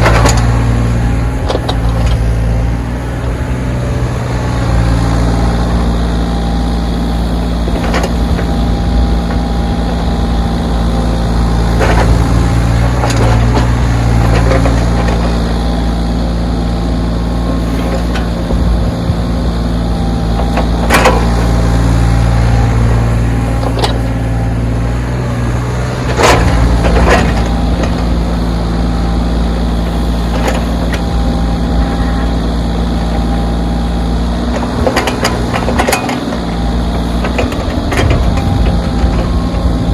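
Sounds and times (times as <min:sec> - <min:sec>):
diesel engine running: 0:00.0 - 0:39.9
sharp knocks and clanks: 0:20.4 - 0:21.5.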